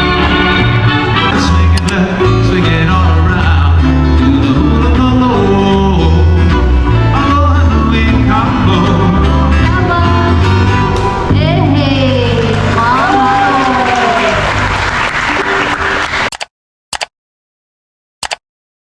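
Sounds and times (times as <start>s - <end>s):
plucked guitar: 0.0s - 13.5s
bass line: 0.0s - 16.0s
person singing: 1.1s - 10.7s.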